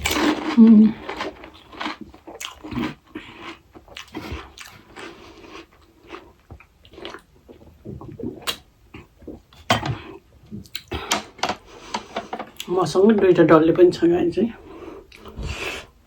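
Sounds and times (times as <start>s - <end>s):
biting and chewing crisp food: 0.0s - 9.9s.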